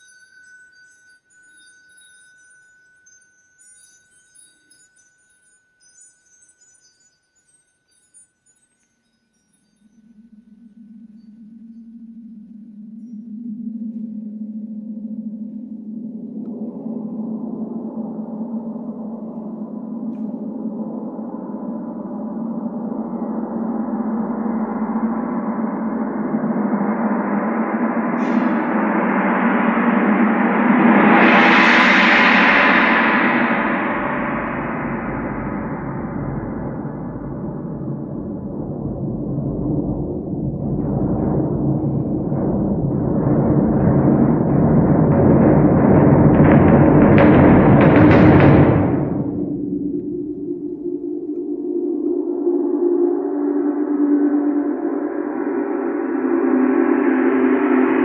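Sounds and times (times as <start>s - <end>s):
tinkling metallic chimes: 0.0s - 13.4s
steady high tone: 0.0s - 45.7s, 48.9s - 58.0s
gong roll ringing: 16.5s - 52.5s.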